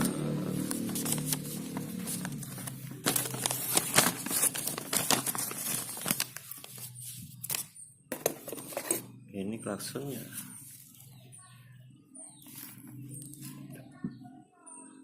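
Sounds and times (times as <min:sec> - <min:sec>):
plastic packaging crinkling and tearing: 0:00.0 - 0:07.8.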